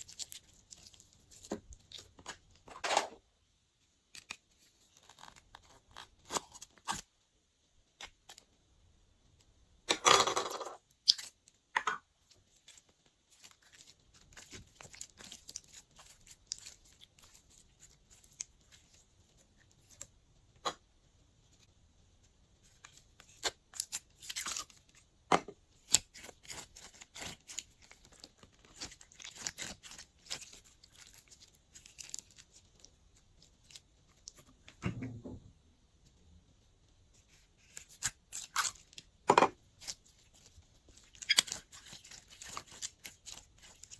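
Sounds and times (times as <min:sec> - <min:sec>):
slime tearing: 0:25.8 - 0:32.8, 0:37.3 - 0:39.1, 0:39.8 - 0:43.9.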